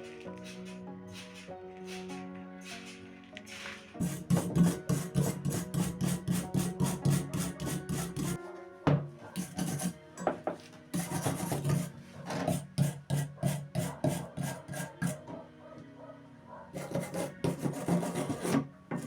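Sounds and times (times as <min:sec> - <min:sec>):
hand scraping rusty metal: 0:04.0 - 0:08.4, 0:09.4 - 0:10.0, 0:10.9 - 0:15.3, 0:16.8 - 0:19.0.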